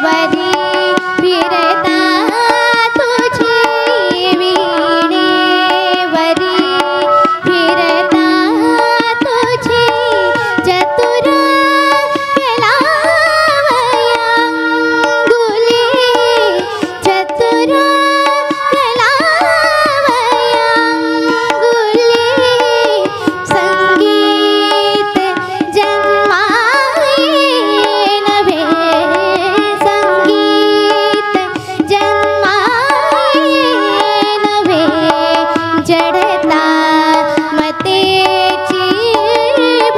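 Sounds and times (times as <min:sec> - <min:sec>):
tabla strokes: 0:00.0 - 0:39.9
bending melody line: 0:19.2 - 0:37.3.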